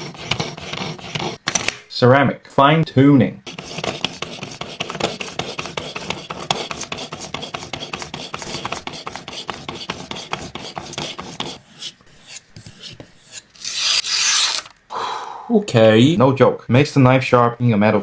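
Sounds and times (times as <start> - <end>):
knife scraping on sharpening stone: 11.6 - 14.7.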